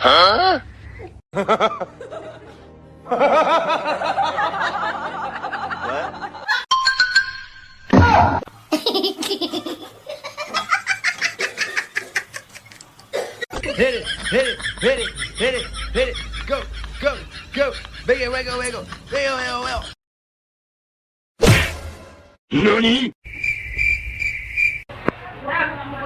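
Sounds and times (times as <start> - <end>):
people laughing: 1.4 - 6.7, 8.7 - 12.8, 13.6 - 20.0
music: 1.4 - 7.2.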